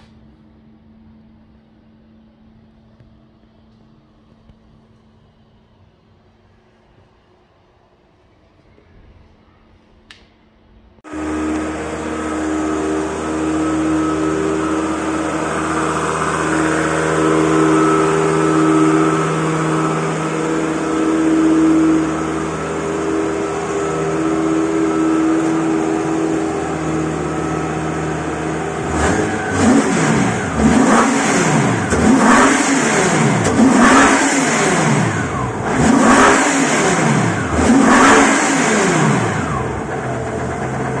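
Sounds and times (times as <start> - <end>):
engine idling and revving: 11.0 - 41.0.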